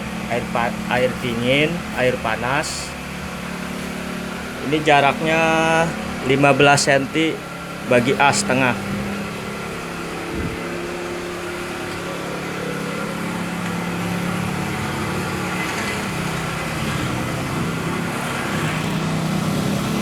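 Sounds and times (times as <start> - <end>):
engine humming: 0.0 - 20.0.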